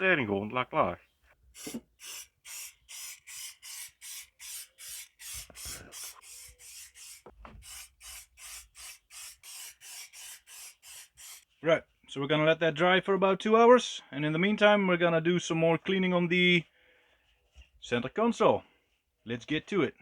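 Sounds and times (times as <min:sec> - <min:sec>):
brush rubbing on steel: 0:01.4 - 0:11.5.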